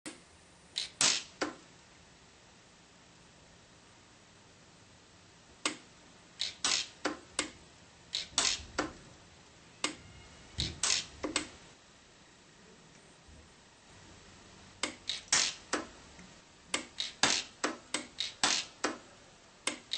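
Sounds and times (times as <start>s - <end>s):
micro welder snaps: 0.8s - 1.6s, 5.6s - 9.0s, 10.6s - 11.5s, 14.8s - 15.9s, 16.7s - 19.0s.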